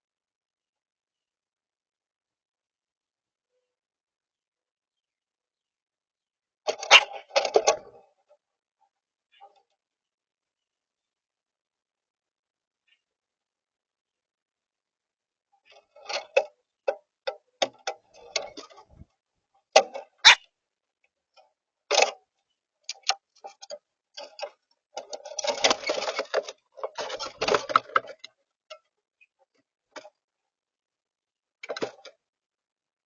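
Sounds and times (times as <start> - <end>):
grackles calling: 6.8 - 7.3, 20.2 - 20.5.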